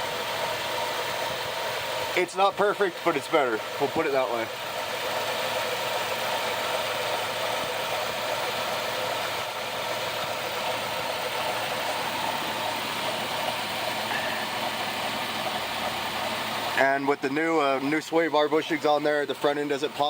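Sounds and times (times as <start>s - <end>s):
truck engine idling: 0.0s - 20.0s.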